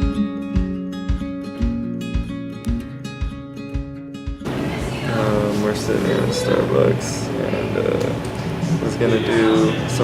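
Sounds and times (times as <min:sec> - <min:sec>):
low thumping beat: 0:00.0 - 0:04.5
strummed acoustic guitar: 0:00.0 - 0:05.7
steady background noise: 0:04.4 - 0:10.0.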